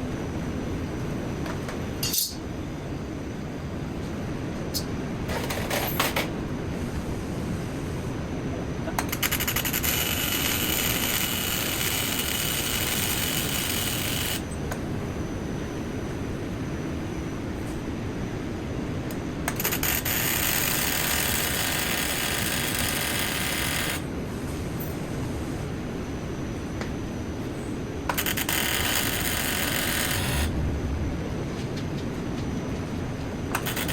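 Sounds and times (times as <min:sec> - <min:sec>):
welding arc crackling and hissing: 0:28.1 - 0:30.6, 0:33.5 - 0:33.9
low rumble: 0:30.4 - 0:33.6.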